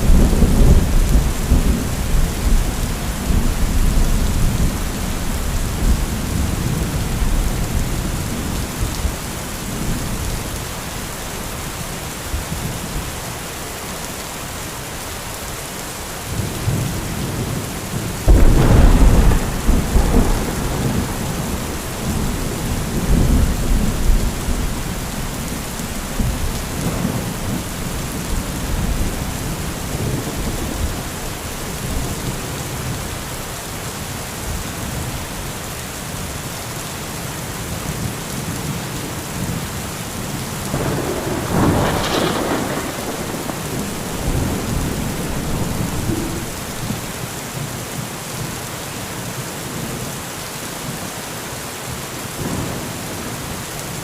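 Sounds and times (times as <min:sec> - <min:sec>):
thunder rumbling: 0:00.0 - 0:10.7, 0:16.3 - 0:33.1, 0:40.6 - 0:47.3
heavy rain: 0:00.0 - 0:54.0.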